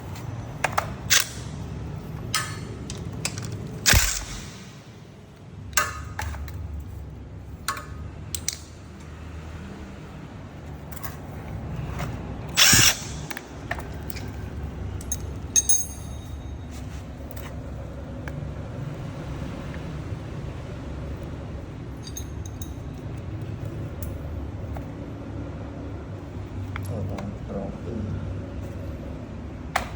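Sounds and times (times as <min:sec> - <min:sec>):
steady low hum: 0:00.0 - 0:05.8, 0:09.9 - 0:29.8
impact wrench hammering: 0:03.8 - 0:05.1, 0:12.6 - 0:13.4.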